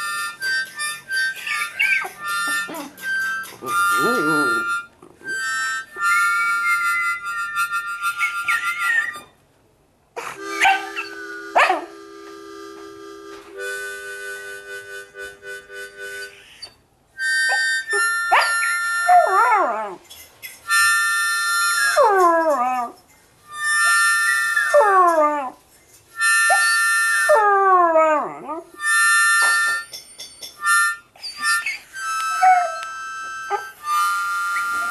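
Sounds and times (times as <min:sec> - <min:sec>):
harmonica playing chords: 0:00.0 - 0:08.9, 0:10.2 - 0:16.5, 0:17.2 - 0:19.4, 0:20.7 - 0:22.1, 0:23.5 - 0:24.8, 0:26.1 - 0:27.4, 0:28.8 - 0:29.9, 0:30.6 - 0:34.9
dog howling: 0:18.3 - 0:20.0, 0:21.9 - 0:23.0, 0:27.3 - 0:28.7, 0:32.4 - 0:32.9.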